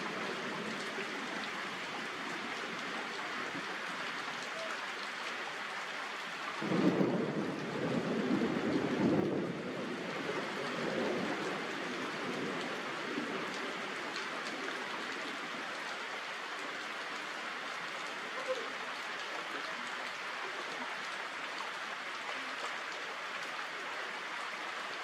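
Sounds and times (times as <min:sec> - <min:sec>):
steady rain falling: 0:00.0 - 0:25.0
thunder rumbling: 0:06.6 - 0:13.9.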